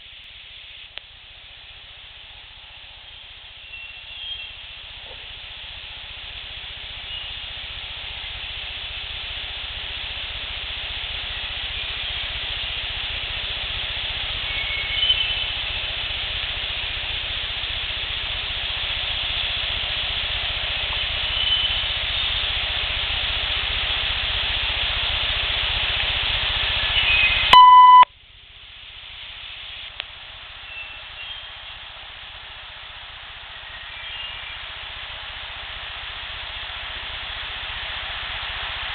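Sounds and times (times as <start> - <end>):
field recording hiss: 0.0 - 38.9
loud short electronic beep: 27.5 - 28.1.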